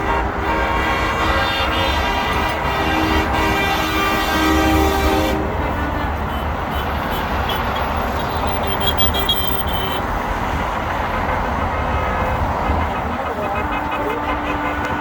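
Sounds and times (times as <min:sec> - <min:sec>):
faint vehicle horn: 0:00.0 - 0:07.9
heavy highway traffic roar: 0:00.0 - 0:15.0.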